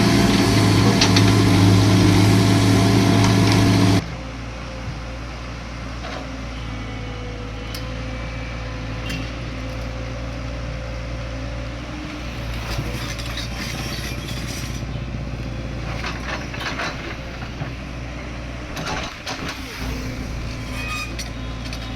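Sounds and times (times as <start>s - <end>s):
steady whine: 0.0s - 4.0s, 18.3s - 21.9s
heavy diesel engine running: 0.0s - 6.0s, 11.1s - 21.9s.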